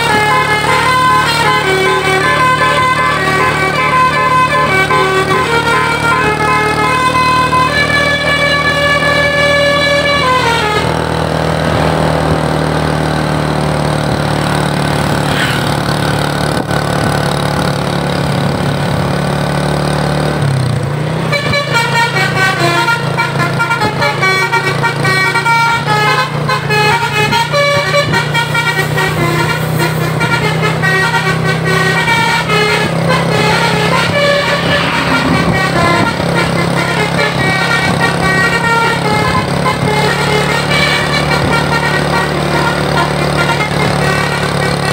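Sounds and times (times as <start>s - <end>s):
musical air horn: 0.0s - 11.9s, 21.2s - 44.9s
bus engine running: 0.0s - 44.9s.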